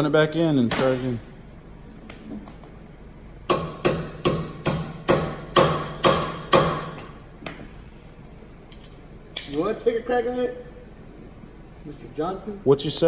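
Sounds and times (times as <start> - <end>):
hammer striking metal: 0.7 - 1.1, 3.5 - 7.2.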